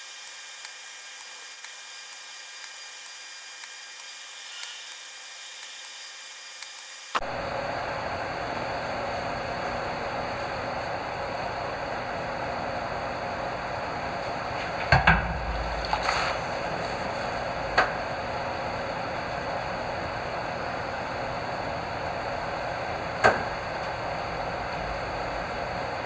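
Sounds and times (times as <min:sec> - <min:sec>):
sharp knocks: 0:14.8 - 0:16.0.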